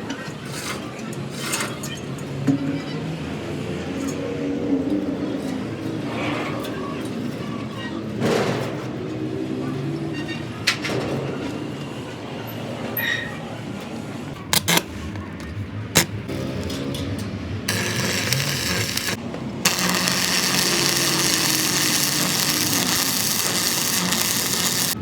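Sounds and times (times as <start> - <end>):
loud steady hiss: 17.7 - 25.0.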